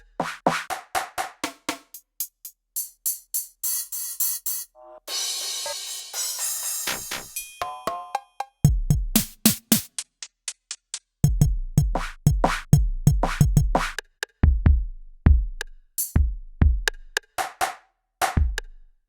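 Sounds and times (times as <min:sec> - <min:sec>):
synthesizer kick drums: 0:08.7 - 0:09.8, 0:11.2 - 0:15.6, 0:16.2 - 0:17.0, 0:18.4 - 0:18.7.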